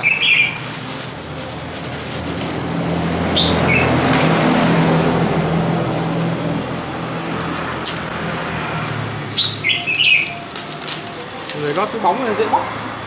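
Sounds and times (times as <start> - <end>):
bird chirping: 0.0 - 0.7, 3.4 - 4.0, 9.3 - 10.7
vehicle engine humming: 0.0 - 13.0.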